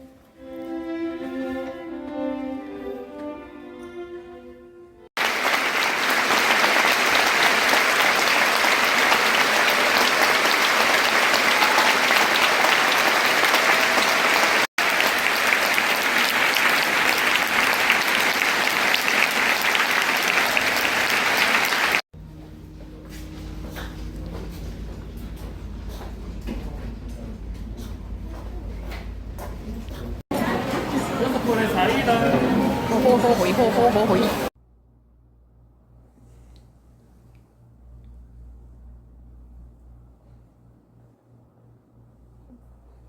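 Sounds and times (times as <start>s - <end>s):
string music: 0.0s - 5.1s
audience applause: 5.2s - 22.0s, 30.3s - 34.5s.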